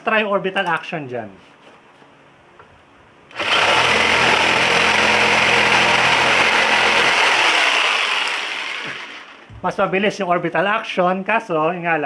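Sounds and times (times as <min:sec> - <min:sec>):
jigsaw cutting wood: 0:03.3 - 0:09.5.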